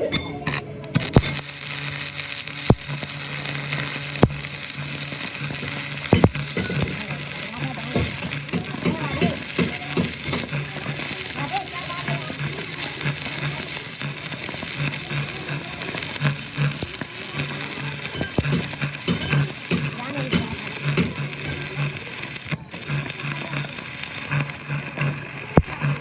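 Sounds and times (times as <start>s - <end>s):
arc welding crackling hiss: 0.0s - 26.0s
pulsing low hum: 1.2s - 11.1s.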